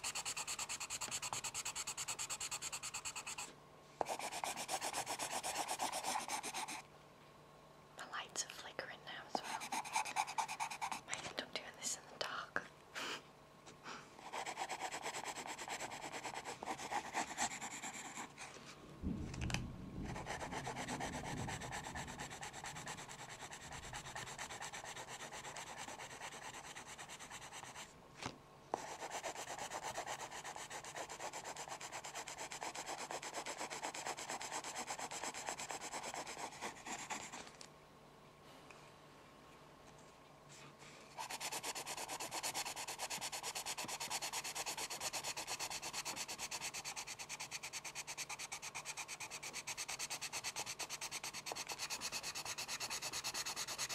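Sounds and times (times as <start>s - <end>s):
pencil shading on paper: 0.0s - 6.8s, 9.4s - 11.0s, 14.2s - 18.5s, 20.2s - 27.9s, 28.8s - 37.4s, 41.2s - 53.9s
low handling rumble: 19.0s - 22.2s.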